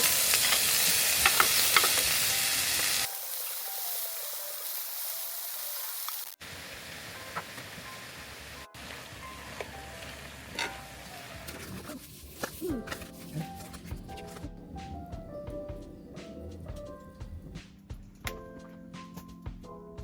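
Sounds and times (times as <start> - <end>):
food sizzling in a pan: 0.0 - 11.5.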